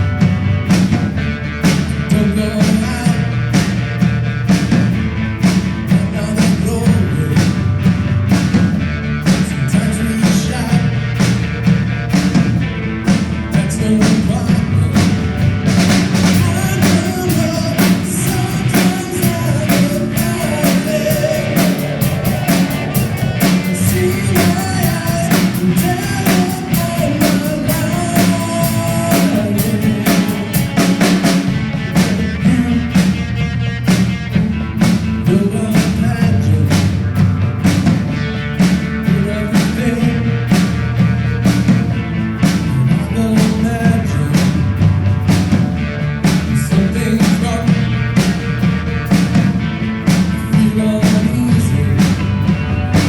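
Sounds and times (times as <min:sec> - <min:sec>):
rock band playing: 0:00.0 - 0:53.0
person singing: 0:00.1 - 0:03.8, 0:05.8 - 0:07.7, 0:09.3 - 0:11.2, 0:13.5 - 0:15.3, 0:16.1 - 0:33.4, 0:35.2 - 0:37.0, 0:38.6 - 0:40.8, 0:42.4 - 0:44.8, 0:46.3 - 0:48.2, 0:50.1 - 0:53.0.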